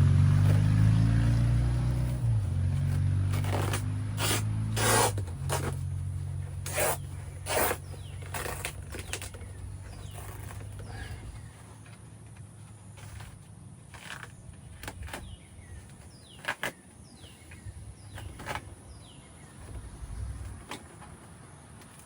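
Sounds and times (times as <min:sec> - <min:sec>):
short scraping and rubbing: 0:00.4 - 0:11.5.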